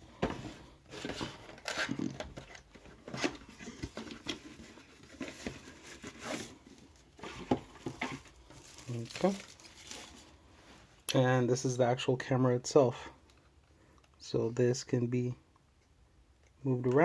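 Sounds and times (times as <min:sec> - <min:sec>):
packaging crinkling and rustling: 0:00.3 - 0:10.4.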